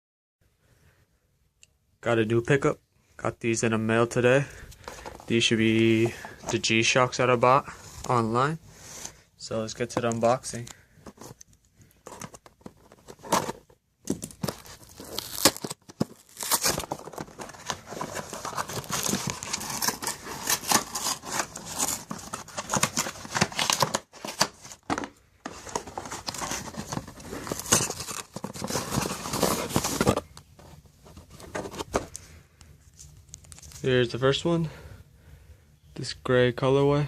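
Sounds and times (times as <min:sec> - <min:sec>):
packaging tearing and crinkling: 0:12.1 - 0:24.9, 0:25.5 - 0:30.3.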